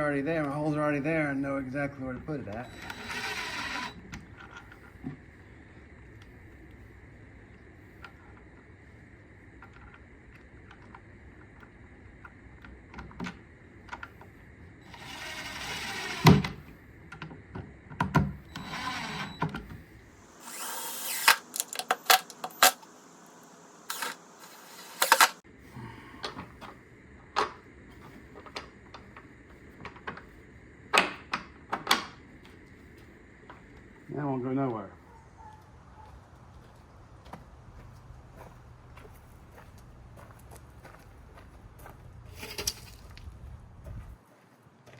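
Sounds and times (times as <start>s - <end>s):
cordless drill driving screws: 2.6s - 4.0s, 14.9s - 16.6s, 18.5s - 19.5s, 20.3s - 22.9s, 23.9s - 25.4s.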